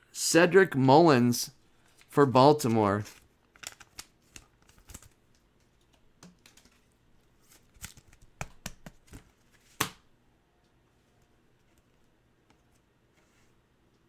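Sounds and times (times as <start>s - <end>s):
cards being flipped through: 1.8s - 5.2s, 7.5s - 10.0s.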